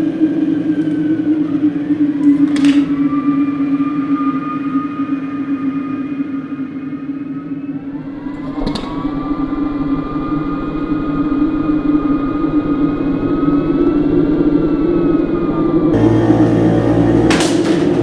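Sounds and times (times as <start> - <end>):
mechanical whine: 7.7 - 18.0
low hum: 7.8 - 18.0.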